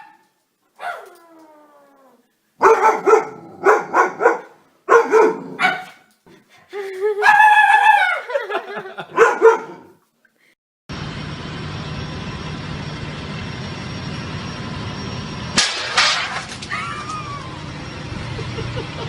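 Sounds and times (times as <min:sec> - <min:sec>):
dog barking: 0:00.0 - 0:00.2, 0:00.8 - 0:01.1, 0:02.6 - 0:06.1, 0:09.0 - 0:10.0.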